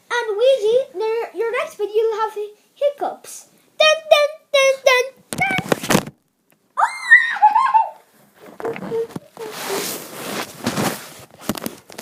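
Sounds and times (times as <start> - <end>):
rustling and handling noise: 5.2 - 6.5, 8.0 - 12.0
child squealing: 6.8 - 8.0, 8.8 - 9.8.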